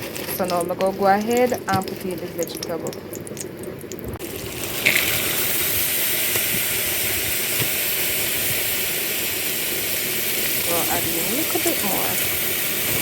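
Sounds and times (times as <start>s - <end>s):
vegetables sizzling in oil: 4.2s - 13.0s.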